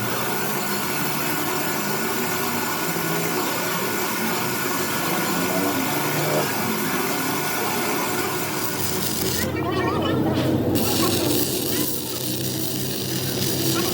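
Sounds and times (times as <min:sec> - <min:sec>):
hiss: 0:00.0 - 0:09.5, 0:10.8 - 0:13.9
machine whir: 0:00.0 - 0:13.9.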